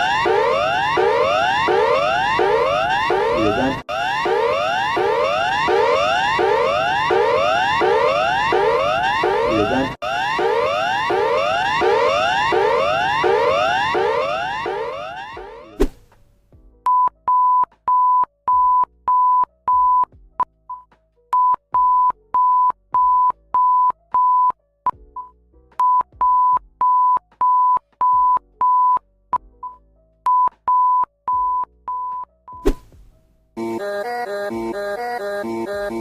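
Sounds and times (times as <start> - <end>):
high electronic alarm beeps: 0.0 - 15.8.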